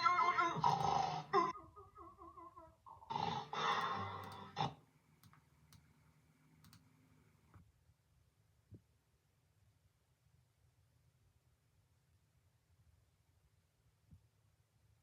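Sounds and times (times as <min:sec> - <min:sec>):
person snoring: 0:00.0 - 0:01.5, 0:02.9 - 0:04.8
faint clicks: 0:03.7 - 0:04.6, 0:05.2 - 0:06.0, 0:06.6 - 0:06.9.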